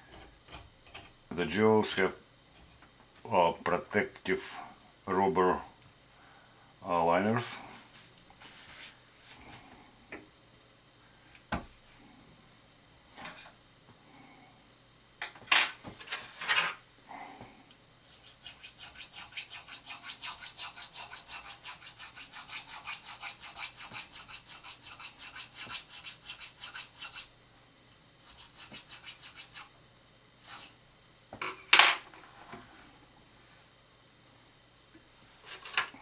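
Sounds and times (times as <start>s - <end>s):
abrasive strokes on knife: 18.0s - 27.3s, 28.2s - 29.7s, 30.4s - 30.8s.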